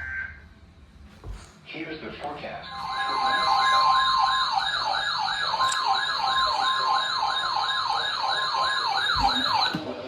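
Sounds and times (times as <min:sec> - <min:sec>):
steady high tone: 0:02.6 - 0:09.7
electronic siren sweeping up: 0:02.7 - 0:09.7.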